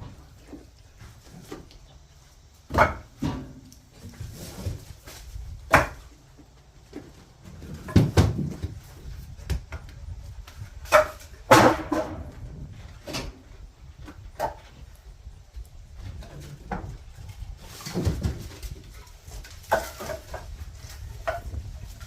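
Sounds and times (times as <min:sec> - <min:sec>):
wooden clunks on firewood stack: 0:02.6 - 0:06.2, 0:06.9 - 0:14.9, 0:16.0 - 0:17.0, 0:17.6 - 0:22.0.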